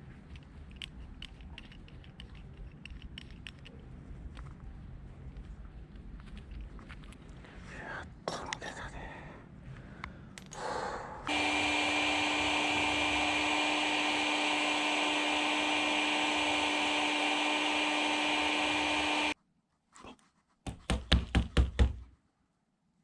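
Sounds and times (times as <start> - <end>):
small electric motor with fan: 11.3 - 19.4.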